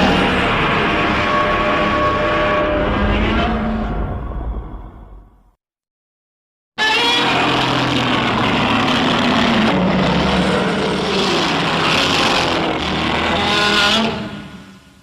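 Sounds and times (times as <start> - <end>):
grating monster roar: 6.8 - 14.6.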